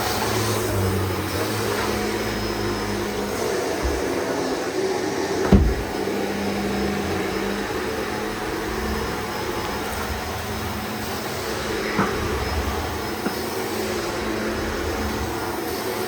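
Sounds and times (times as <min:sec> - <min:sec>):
vacuum cleaner running: 0:00.0 - 0:16.0
sharp thump: 0:05.4 - 0:05.9.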